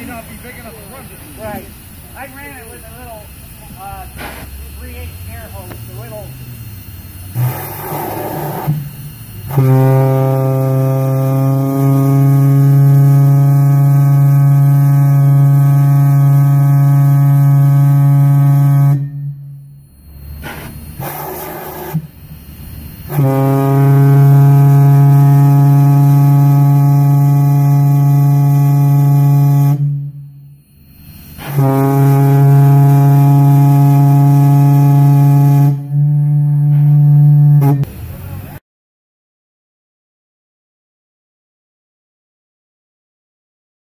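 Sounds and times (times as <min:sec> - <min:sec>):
deep compressed air whistle blasts: 0:03.3 - 0:38.1.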